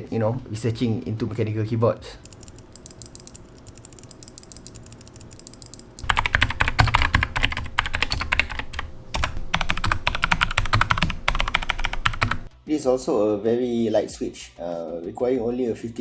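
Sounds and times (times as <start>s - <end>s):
mechanical keyboard typing: 2.2s - 12.5s.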